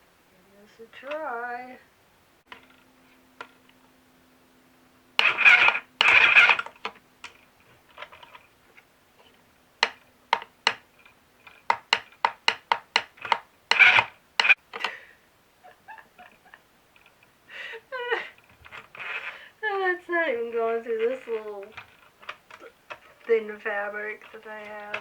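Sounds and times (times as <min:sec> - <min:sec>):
sewing machine motor hum: 0:05.1 - 0:08.5, 0:09.2 - 0:17.1, 0:17.9 - 0:19.5, 0:20.2 - 0:25.0
sewing machine running bursts: 0:05.2 - 0:06.8, 0:13.7 - 0:14.6
sewing machine sharp clicks: 0:05.2 - 0:07.4, 0:09.8 - 0:15.0, 0:24.3 - 0:25.0.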